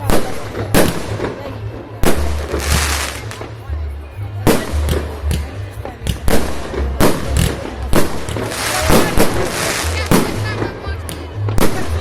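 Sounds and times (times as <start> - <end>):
dense firework crackling: 0.0 - 3.6, 6.2 - 10.9.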